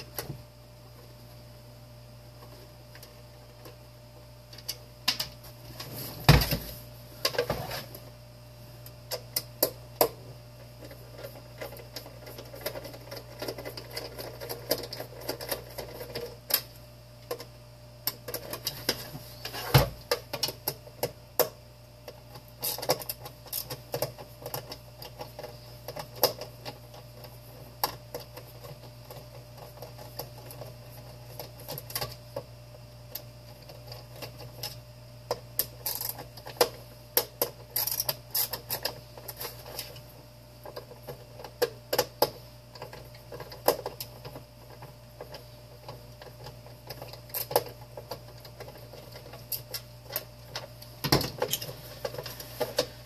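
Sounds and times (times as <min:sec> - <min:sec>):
steady low hum: 0:00.0 - 0:53.0
tools and plastic parts clicking: 0:10.8 - 0:16.7, 0:33.1 - 0:40.0, 0:40.6 - 0:52.9.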